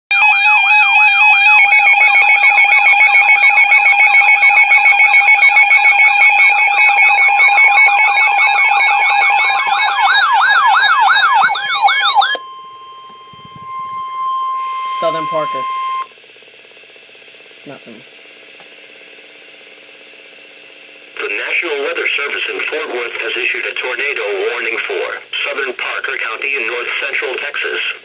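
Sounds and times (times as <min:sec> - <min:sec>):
siren-like sweeps: 0:00.1 - 0:16.1
steady alert tone: 0:00.1 - 0:16.1.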